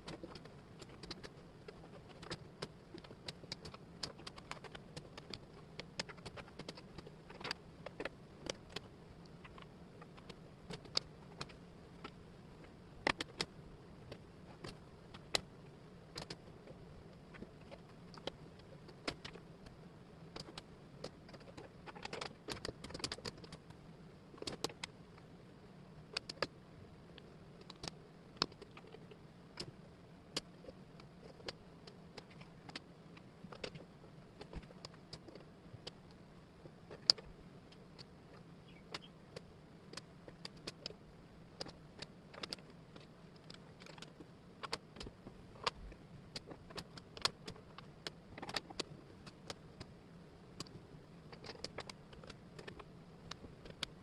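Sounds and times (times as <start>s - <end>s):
wooden puzzle pieces clicking: 0.0s - 15.5s, 17.3s - 23.6s, 27.2s - 29.7s, 36.9s - 49.9s, 50.5s - 54.0s
faint steady hum: 0.0s - 54.0s.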